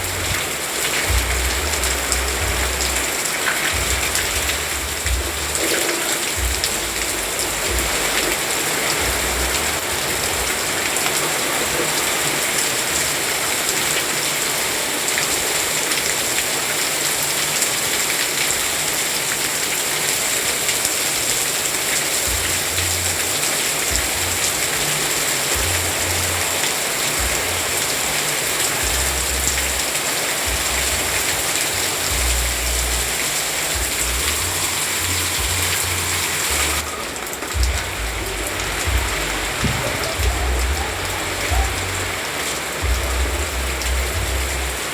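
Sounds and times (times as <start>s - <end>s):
steady rain falling: 0.0s - 44.9s
low rumble: 1.1s - 3.1s, 3.8s - 5.6s.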